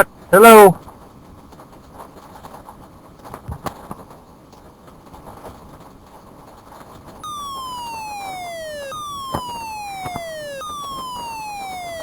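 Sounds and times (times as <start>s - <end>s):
electronic warning siren: 7.2s - 12.0s
sharp clicks: 7.2s - 12.0s.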